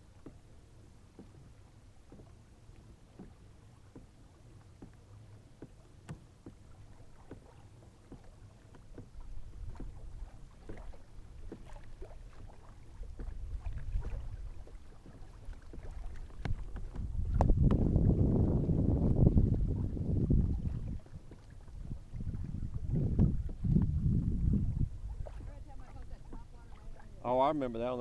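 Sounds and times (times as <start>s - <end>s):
ticks and knocks on kayak hull: 0.0s - 27.2s
wind rumble on microphone: 9.1s - 27.2s.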